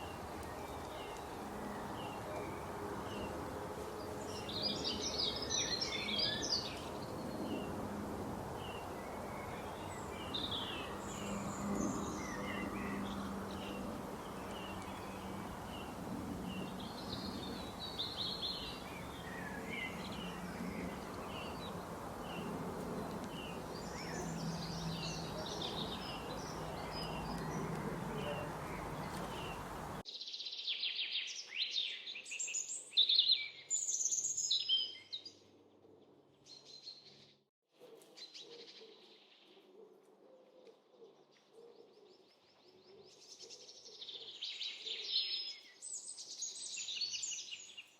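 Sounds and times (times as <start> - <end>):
outdoor background hiss: 0.0 - 30.0
songbirds chirping: 0.0 - 47.9.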